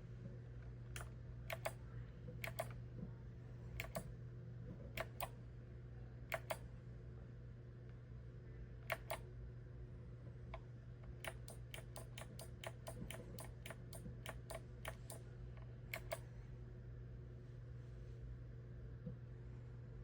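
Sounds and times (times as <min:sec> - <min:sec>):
steady low hum: 0:00.0 - 0:20.0
mechanical keyboard keys clicking: 0:03.8 - 0:04.1, 0:15.9 - 0:16.2.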